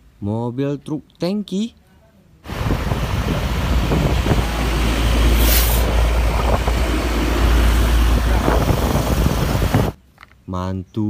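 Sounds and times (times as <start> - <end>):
truck engine rumbling: 2.5 - 10.0
short hiss: 5.3 - 6.0.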